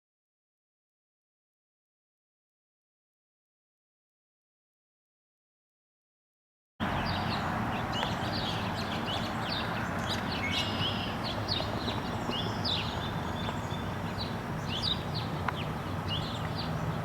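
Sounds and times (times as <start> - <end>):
outdoor background hiss: 6.8 - 17.0
small birds chirping: 6.8 - 17.0.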